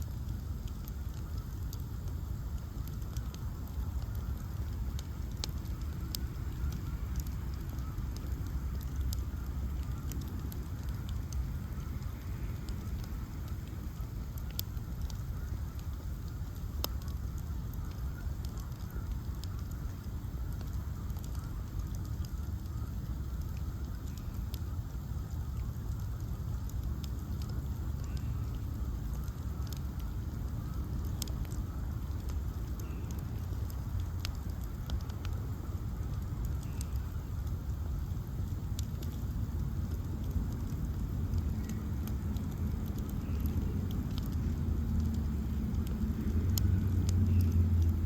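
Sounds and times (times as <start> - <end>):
bonfire flames rumbling: 0.0 - 48.0
fire crackling: 0.0 - 48.0.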